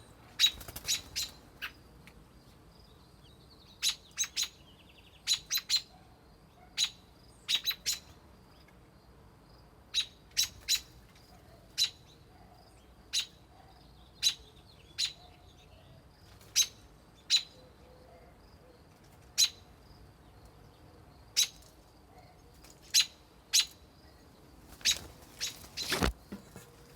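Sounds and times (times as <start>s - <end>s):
robin alarm calls: 0.4s - 1.8s, 3.6s - 8.2s, 9.9s - 19.8s, 21.3s - 26.1s.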